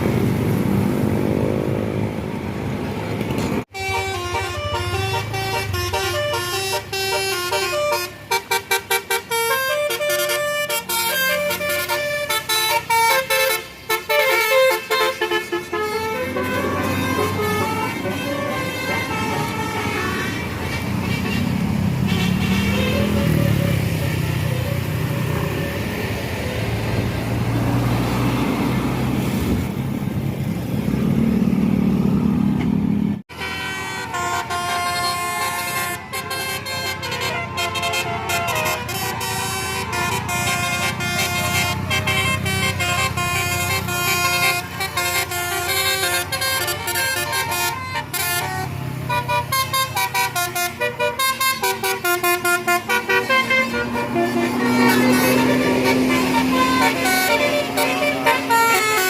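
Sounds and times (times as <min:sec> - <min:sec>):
bus engine: 0:00.0 - 0:59.0
road traffic noise: 0:00.0 - 0:59.0
multi-tone bus air horn tune: 0:03.7 - 0:24.7, 0:33.3 - 0:59.0.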